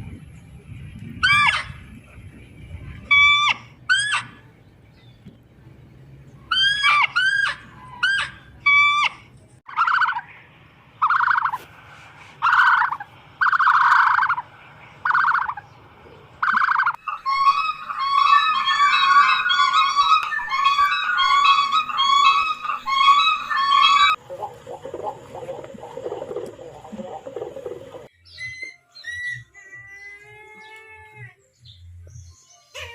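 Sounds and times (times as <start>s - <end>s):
birds calling: 1.0s - 32.9s
flock of birds chorus: 12.4s - 28.1s.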